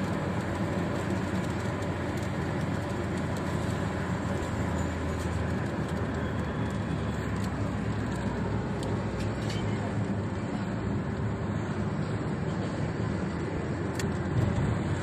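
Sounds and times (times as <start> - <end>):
raindrop ticks: 0.0 - 9.7
rain hissing on windshield: 0.0 - 15.0
tyres and engine drone: 0.0 - 15.0.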